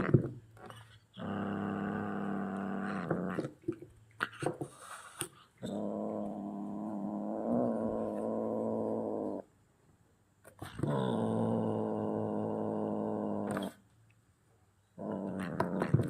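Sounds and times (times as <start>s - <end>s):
kitten growling: 1.2s - 3.6s, 5.6s - 9.5s, 10.6s - 13.8s.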